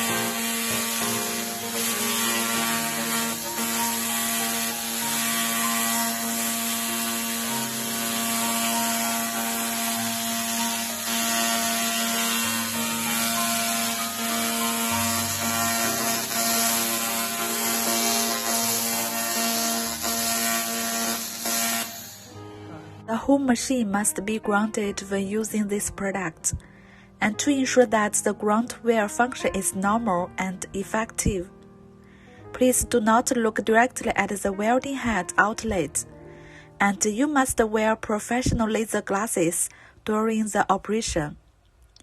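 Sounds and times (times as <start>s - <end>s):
laser cleaner hissing on metal: 0.0s - 22.4s.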